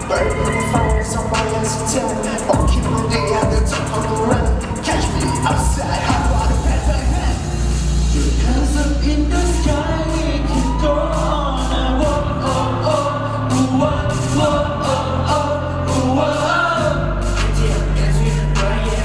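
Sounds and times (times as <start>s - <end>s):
steady drum beat: 0.0s - 11.3s
heavy bass line: 0.0s - 19.0s
voices singing pop song: 0.0s - 19.0s.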